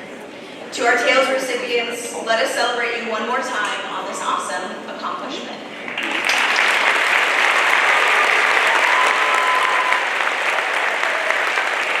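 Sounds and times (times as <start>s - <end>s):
audience applauding: 5.9s - 12.0s.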